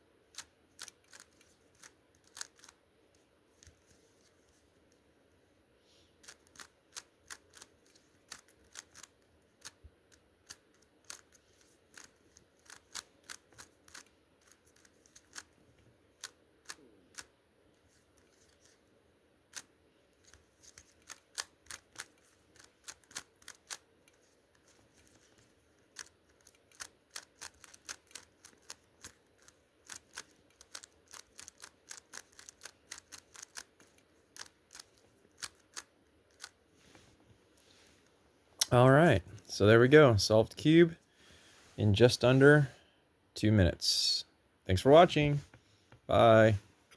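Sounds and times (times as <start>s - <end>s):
speed cube plastic clicks: 0.3s - 2.8s, 6.2s - 17.3s, 19.5s - 36.6s.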